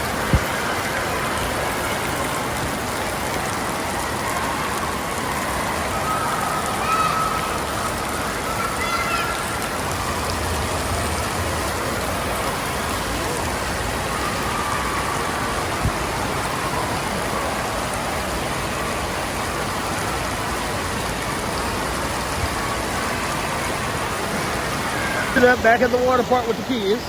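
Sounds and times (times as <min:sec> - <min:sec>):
water rushing and splashing: 0:00.0 - 0:27.0
din of voices: 0:25.2 - 0:27.0.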